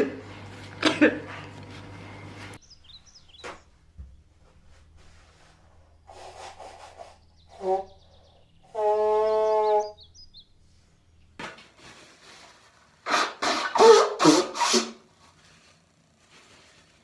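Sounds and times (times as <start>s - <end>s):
person blowing nose: 6.1s - 7.8s, 13.0s - 15.0s.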